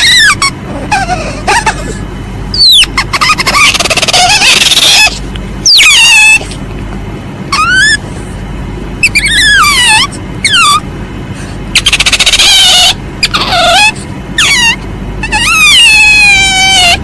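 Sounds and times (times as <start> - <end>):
high falling squeals: 7.5 - 8.0, 9.1 - 10.8.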